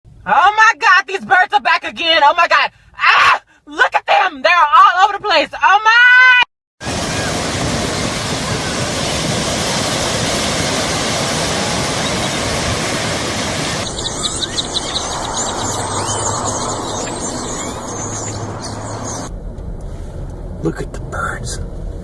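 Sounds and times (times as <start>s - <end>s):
large flock of birds calling: 11.0s - 19.3s.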